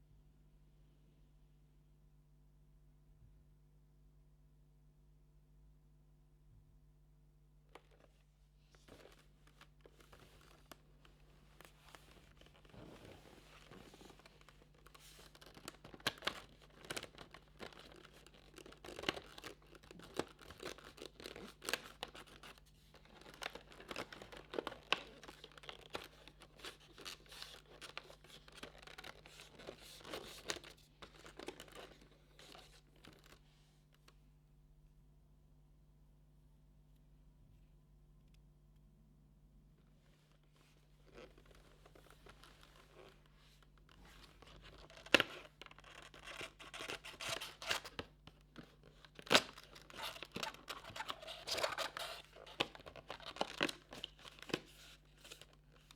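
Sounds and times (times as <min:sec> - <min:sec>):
cardboard tearing and crinkling: 0:44.7 - 0:48.1, 0:48.8 - 0:55.5.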